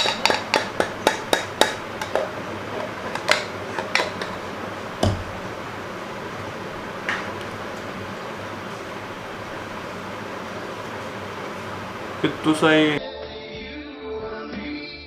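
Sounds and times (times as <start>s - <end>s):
metal spoon clinking against dish: 0.0s - 2.3s.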